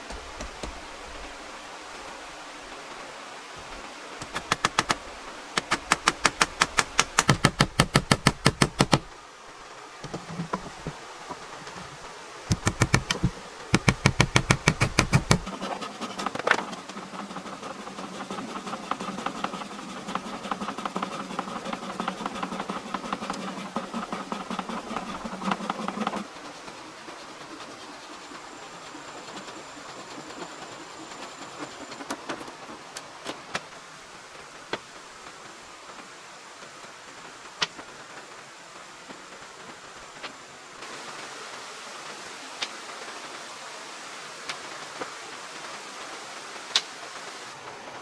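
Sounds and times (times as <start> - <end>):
power tool rattling: 12.5 - 26.2.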